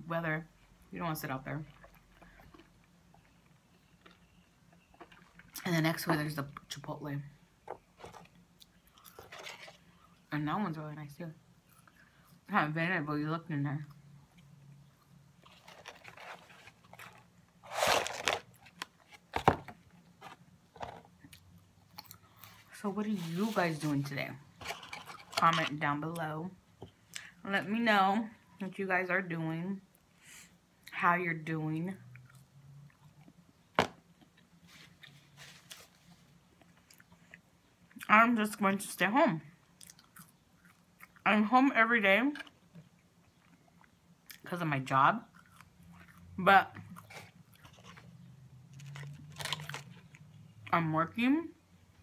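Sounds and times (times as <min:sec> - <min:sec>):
person chewing food: 0:08.1 - 0:10.2, 0:21.2 - 0:22.6, 0:36.5 - 0:38.0, 0:39.8 - 0:41.2, 0:45.3 - 0:50.5
soft chewing clicks: 0:42.6 - 0:44.5.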